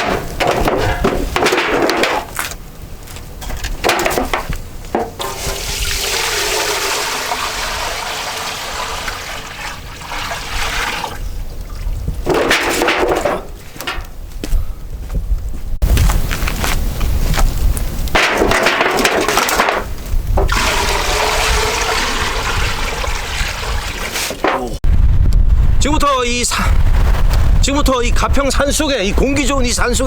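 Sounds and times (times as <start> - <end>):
knocks: 0.0 - 2.3, 3.8 - 5.5, 24.4 - 24.8
water rushing: 5.0 - 11.3, 20.5 - 24.8.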